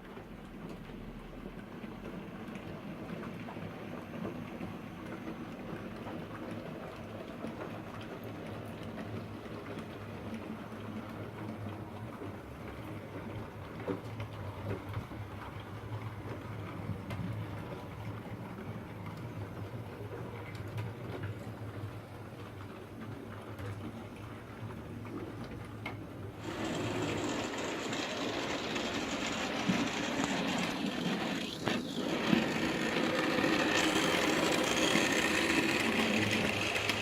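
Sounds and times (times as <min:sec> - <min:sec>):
wheels rolling and clicking on rails: 0:00.0 - 0:37.0
model train motor hum: 0:26.4 - 0:37.0.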